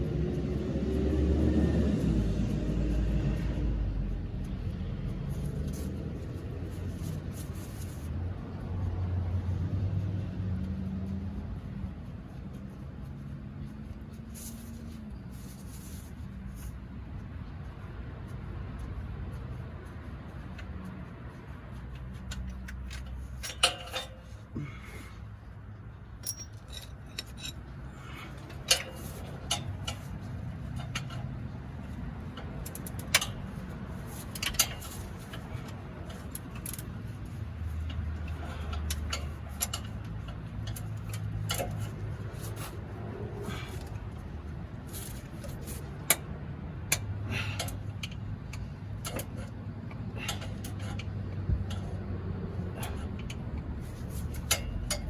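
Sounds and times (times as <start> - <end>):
low steady rumble: 0.0 - 55.0
metallic clinks of hand tools: 22.3 - 24.5, 26.2 - 31.3.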